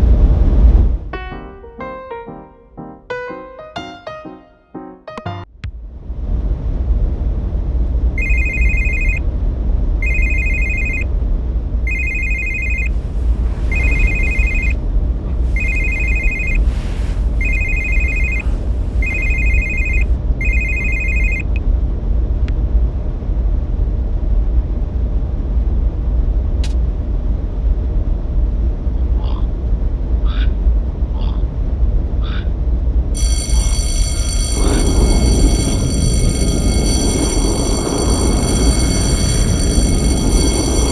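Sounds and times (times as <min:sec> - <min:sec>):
telephone ringing with electronic trill: 0:08.2 - 0:09.2, 0:10.0 - 0:11.0, 0:11.9 - 0:13.0, 0:13.7 - 0:14.8, 0:15.6 - 0:16.7, 0:17.4 - 0:21.5, 0:33.2 - 0:40.9
low rumble: 0:33.2 - 0:40.9.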